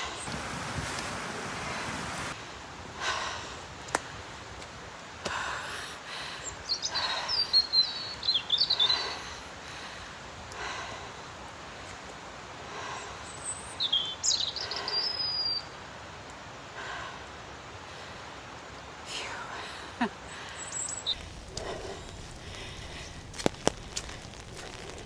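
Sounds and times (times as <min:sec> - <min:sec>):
person breathing hard: 0:03.0 - 0:03.8, 0:05.2 - 0:07.6, 0:08.8 - 0:11.4, 0:12.7 - 0:13.3, 0:19.5 - 0:25.0
bird singing high chirps: 0:06.7 - 0:09.0, 0:13.4 - 0:15.7, 0:20.6 - 0:21.2.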